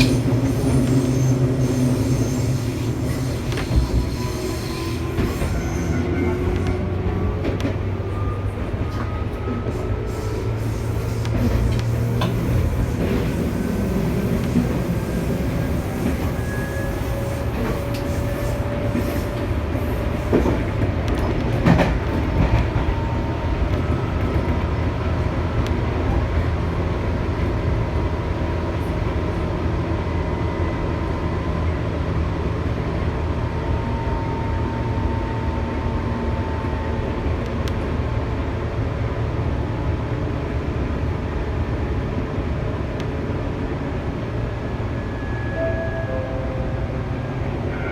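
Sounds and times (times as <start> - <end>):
electric train rumble: 0.0 - 47.9.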